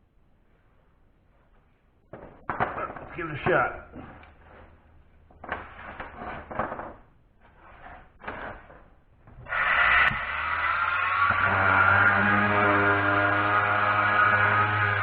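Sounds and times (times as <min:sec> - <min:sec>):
palm sander motor running: 0:09.5 - 0:15.0.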